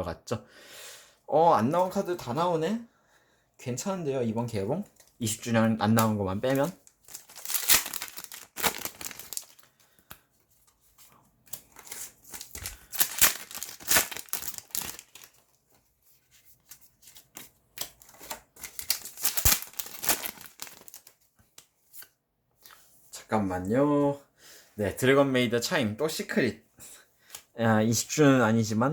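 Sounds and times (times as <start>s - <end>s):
foil packs tearing and crinkling: 6.4s - 9.8s, 11.7s - 15.4s, 18.2s - 21.2s.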